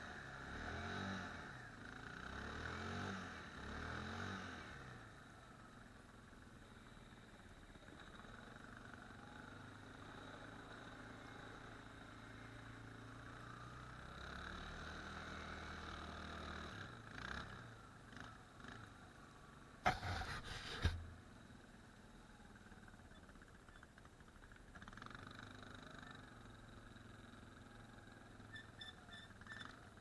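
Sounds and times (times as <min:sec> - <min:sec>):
quad bike engine idling: 0:05.0 - 0:15.2, 0:17.0 - 0:30.0.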